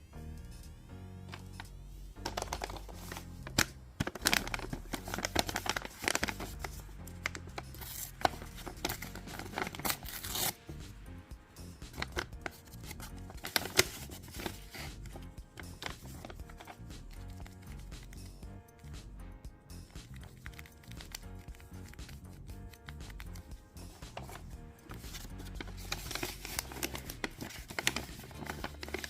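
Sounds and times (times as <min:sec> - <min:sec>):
soft background music: 0:00.0 - 0:29.0
paper ripping and crinkling: 0:02.2 - 0:10.8, 0:11.9 - 0:17.6, 0:22.8 - 0:29.0.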